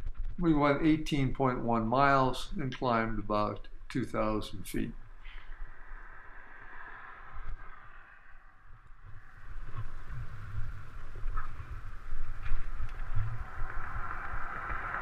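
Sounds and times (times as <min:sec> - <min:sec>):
wind buffeting microphone: 0:05.2 - 0:15.0
tyres rolling on dirt trail: 0:09.2 - 0:15.0.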